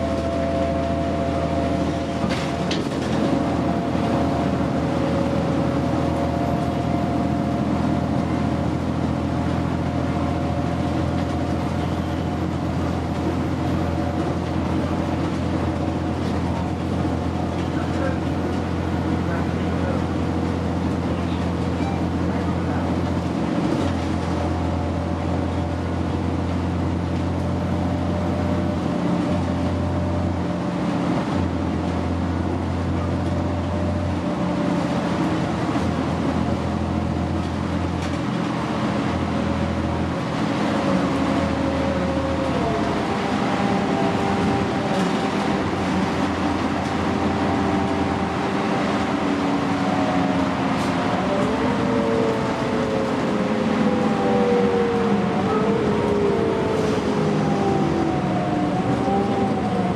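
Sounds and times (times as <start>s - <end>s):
bus engine drone with whine: 0.0s - 59.9s
tyre and road noise: 28.8s - 59.9s.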